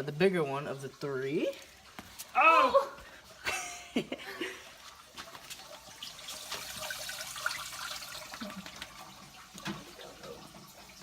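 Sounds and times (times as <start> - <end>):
water drips and clicks: 0.0 - 2.4, 4.6 - 11.0
water splashing in fish tank: 3.0 - 11.0.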